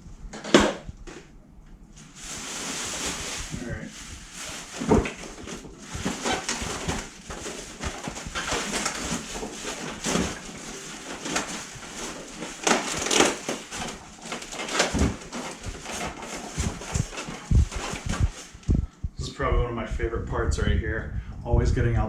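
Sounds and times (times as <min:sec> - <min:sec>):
packaging rustling and crinkling: 0:02.0 - 0:18.7.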